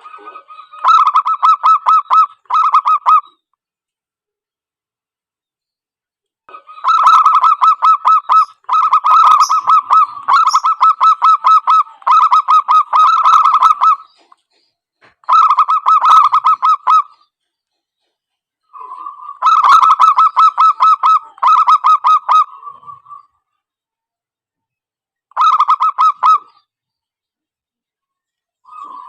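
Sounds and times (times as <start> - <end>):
doves cooing: 0.0 - 3.4, 6.5 - 14.4, 15.2 - 17.2, 18.7 - 23.4, 28.7 - 29.0.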